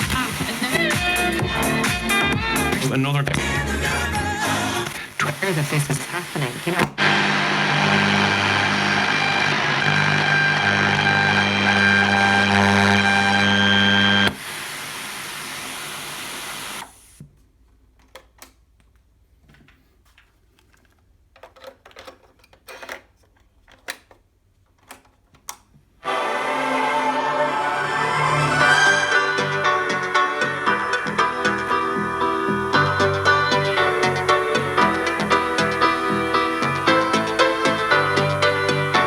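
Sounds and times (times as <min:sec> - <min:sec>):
static hiss: 0:00.0 - 0:03.3, 0:04.3 - 0:11.7, 0:13.9 - 0:17.2, 0:29.1 - 0:39.0
music from boombox: 0:00.0 - 0:05.9, 0:26.0 - 0:39.0.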